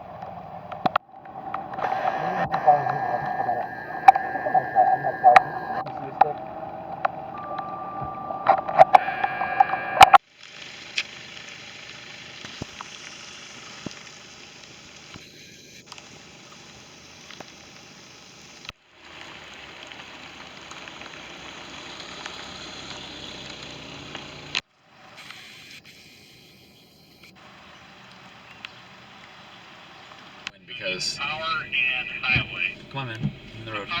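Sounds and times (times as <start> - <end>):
heavy rain hissing: 0.0 - 8.1, 8.7 - 26.4, 27.4 - 34.0
raindrops ticking: 0.0 - 15.2, 15.9 - 24.6.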